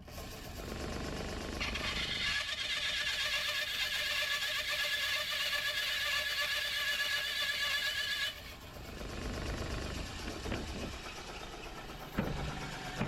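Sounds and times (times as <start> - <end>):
bandsaw cutting steel screech: 1.6 - 9.0.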